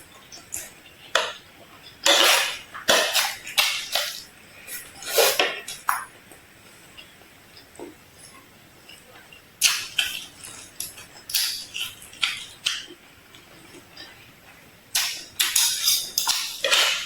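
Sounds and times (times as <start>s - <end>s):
crunching while eating: 9.6s - 14.3s, 14.9s - 17.0s.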